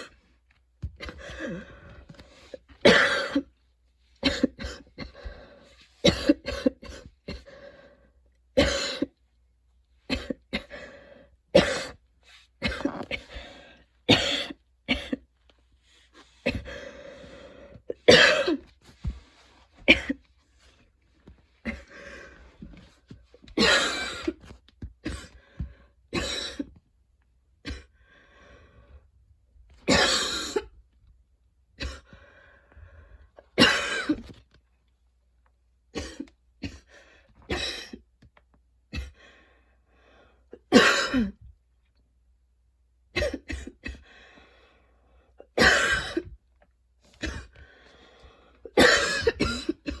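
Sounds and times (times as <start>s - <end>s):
woman coughing: 2.8s - 3.5s, 4.2s - 5.2s, 6.0s - 7.4s, 8.6s - 9.1s, 11.6s - 12.0s, 12.6s - 13.4s, 14.1s - 15.2s, 18.1s - 18.6s, 19.9s - 20.2s, 23.6s - 24.3s, 29.9s - 30.7s, 33.6s - 34.3s, 40.6s - 41.4s, 43.2s - 44.0s, 45.6s - 46.3s, 48.7s - 50.0s.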